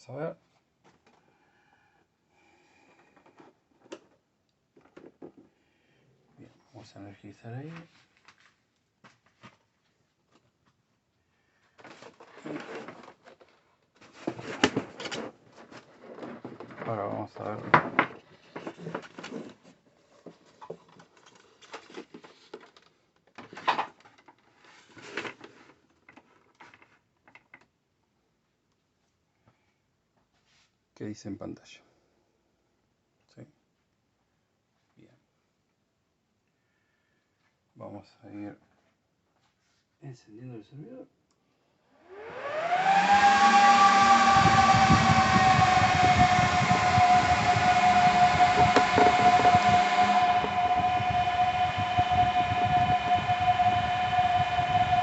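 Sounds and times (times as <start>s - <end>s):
server cooling fans whining: 42.1s - 55.0s.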